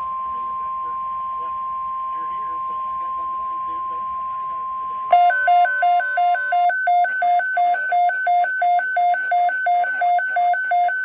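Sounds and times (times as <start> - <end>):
rapid electronic alarm beeping: 5.1 - 11.0.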